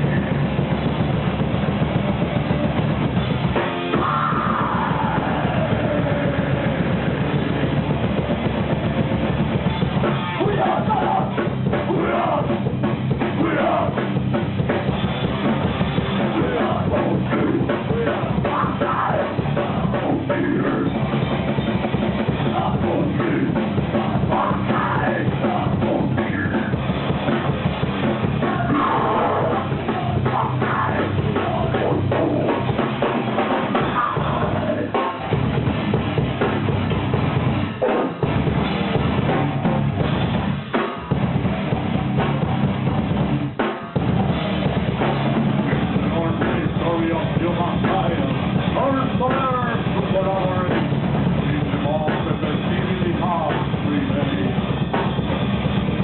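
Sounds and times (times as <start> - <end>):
heavy metal band playing: 0.0 - 56.0
pounding drum kit: 0.0 - 56.0.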